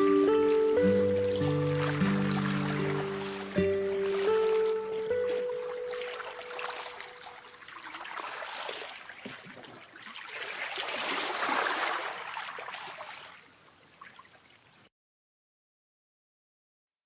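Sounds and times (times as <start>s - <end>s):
held music note: 0.0s - 7.4s
rushing water: 0.0s - 14.9s.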